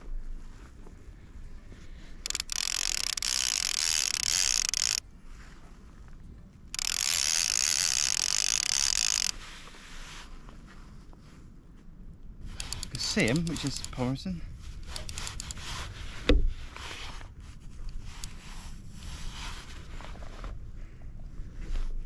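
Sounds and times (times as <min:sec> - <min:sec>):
fishing reel drag ratcheting: 0:02.2 - 0:05.1, 0:06.6 - 0:09.5, 0:12.5 - 0:14.2, 0:14.8 - 0:15.9, 0:17.8 - 0:18.6.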